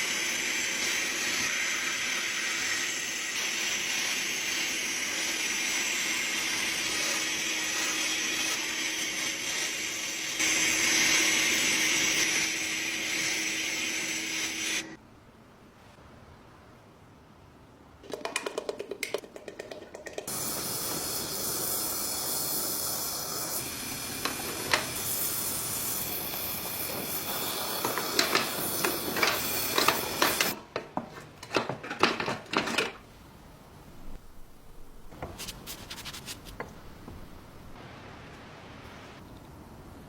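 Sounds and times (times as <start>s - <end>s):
rubbing hiss on metal cylinder: 20.3s - 30.6s, 35.4s - 36.6s.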